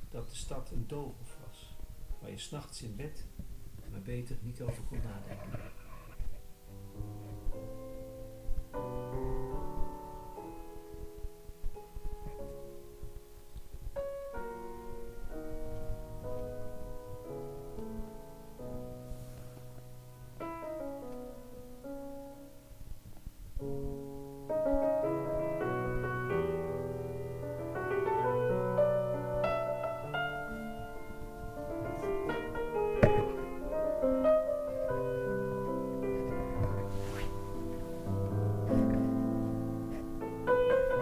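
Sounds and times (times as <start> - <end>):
solo piano music: 6.2 - 41.0.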